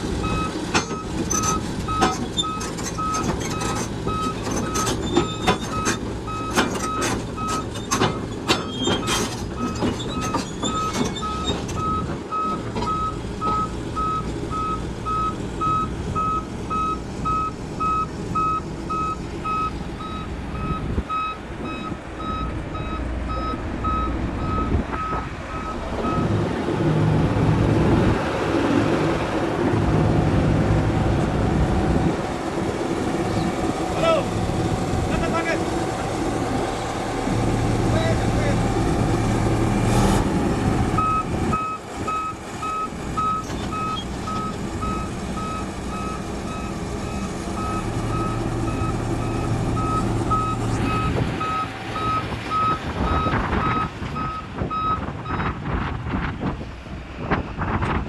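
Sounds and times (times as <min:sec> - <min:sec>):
diesel engine running: 0:00.0 - 0:58.0
reversing alarm beeping: 0:00.2 - 0:26.3, 0:41.0 - 0:55.4.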